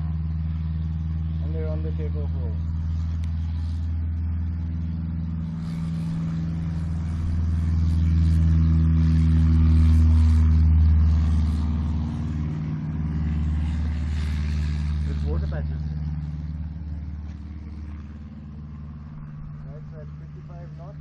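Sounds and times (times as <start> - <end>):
small plane engine droning: 0.0 - 21.0.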